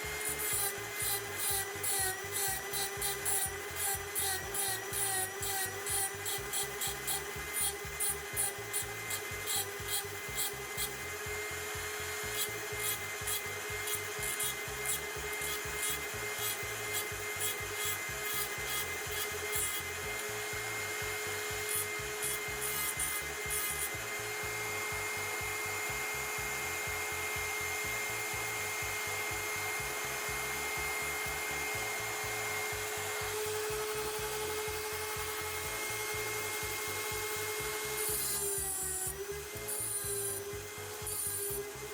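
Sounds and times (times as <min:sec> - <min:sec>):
hand filing strokes: 0:00.0 - 0:11.1, 0:12.0 - 0:20.3, 0:21.1 - 0:24.0, 0:33.3 - 0:41.9.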